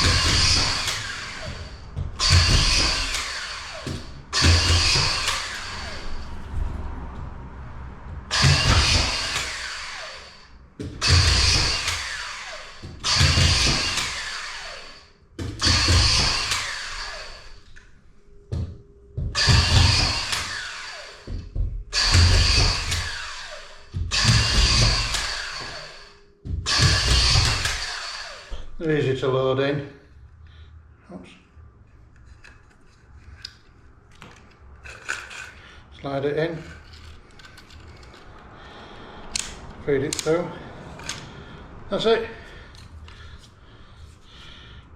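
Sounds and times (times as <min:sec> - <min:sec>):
screw gun motor whine: 0:00.0 - 0:06.3, 0:08.3 - 0:17.8, 0:19.4 - 0:21.3, 0:22.0 - 0:28.6.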